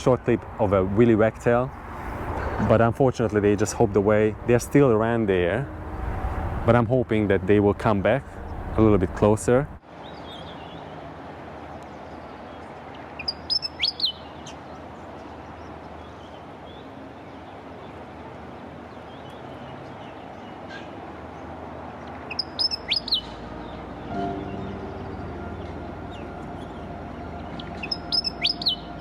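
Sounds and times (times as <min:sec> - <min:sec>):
bird chirping: 0:13.2 - 0:14.6, 0:22.0 - 0:29.0.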